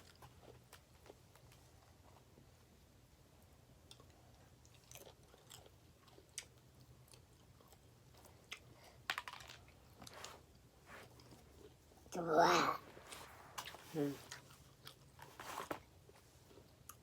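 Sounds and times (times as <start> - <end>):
person chewing food: 3.8 - 11.8, 13.0 - 15.3.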